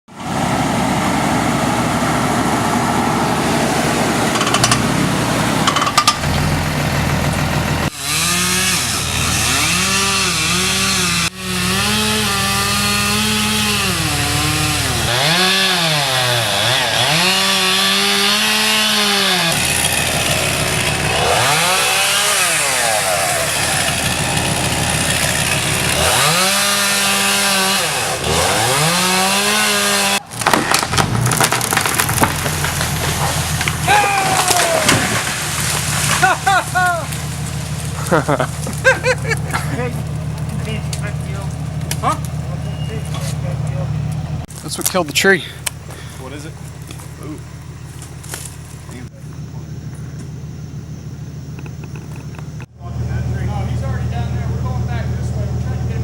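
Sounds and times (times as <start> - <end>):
chainsaw cutting wood: 4.2 - 5.0, 7.8 - 43.4, 47.9 - 49.0.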